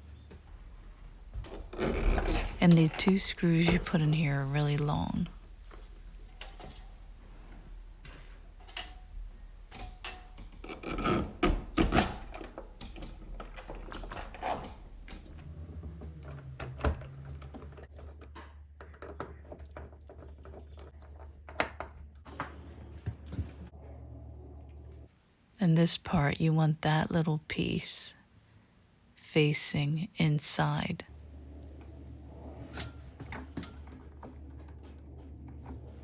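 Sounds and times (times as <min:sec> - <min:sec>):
metal parts scraping wood: 0:00.0 - 0:23.0.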